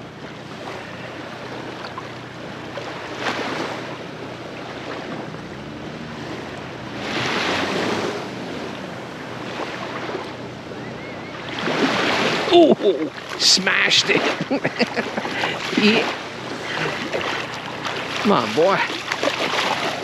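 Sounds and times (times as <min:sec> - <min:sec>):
surf washing on beach: 0:00.0 - 0:20.0
wave breaking: 0:04.6 - 0:10.4, 0:11.4 - 0:20.0.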